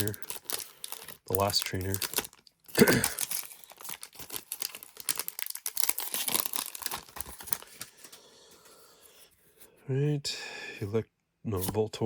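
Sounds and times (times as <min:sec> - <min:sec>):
foil wrapper crinkling and tearing: 0:00.0 - 0:08.2.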